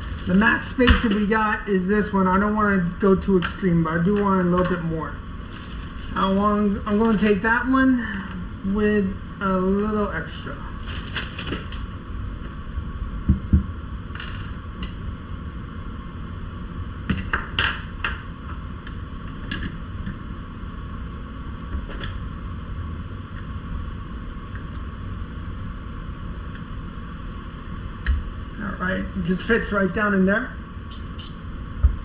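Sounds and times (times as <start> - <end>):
low background rumble: 0.0 - 14.1.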